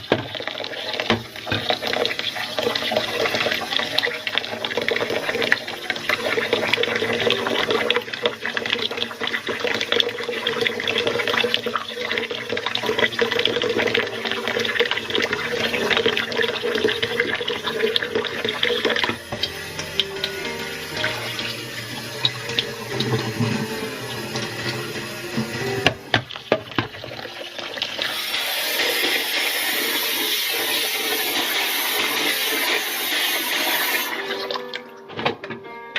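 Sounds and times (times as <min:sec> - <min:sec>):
water splashing in a pot: 0:00.0 - 0:34.8
tap running: 0:00.0 - 0:35.6.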